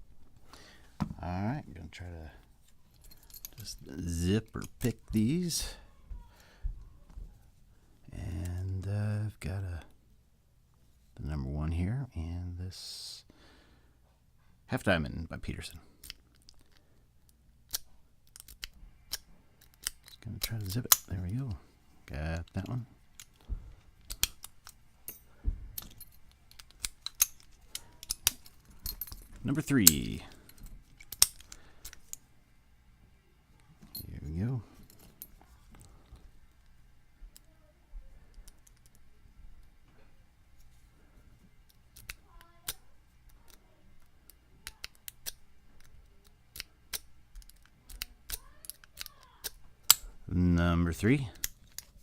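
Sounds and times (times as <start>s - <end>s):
padlocks clinking: 2.7s - 5.0s, 16.0s - 21.4s, 22.4s - 32.2s, 41.6s - 50.2s, 51.0s - 52.0s.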